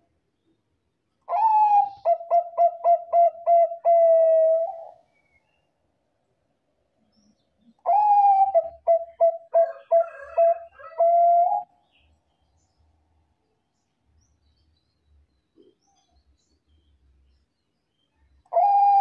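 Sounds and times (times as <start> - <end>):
dove cooing: 1.3 - 5.0, 7.8 - 11.7, 18.5 - 19.0.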